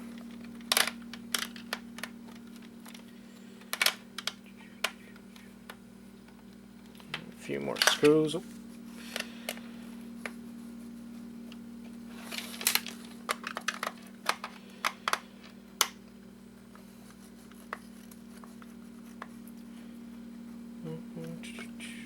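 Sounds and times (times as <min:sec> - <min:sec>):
steady hum: 0:00.0 - 0:22.0
plastic casing clicks and clatter: 0:03.6 - 0:05.0, 0:12.4 - 0:16.0.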